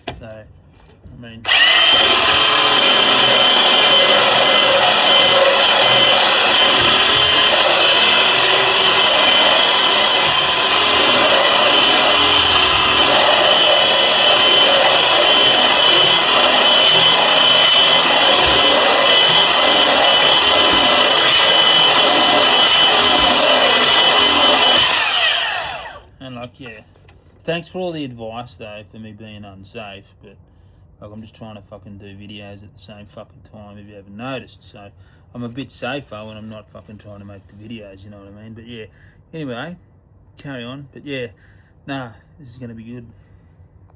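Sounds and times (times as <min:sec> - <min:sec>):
belt sander on wood: 0:01.5 - 0:26.0.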